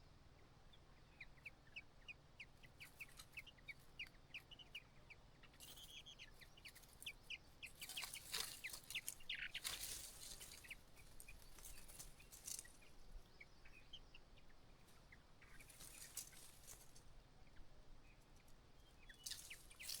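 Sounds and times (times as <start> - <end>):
bird chirping: 0.0 - 20.0.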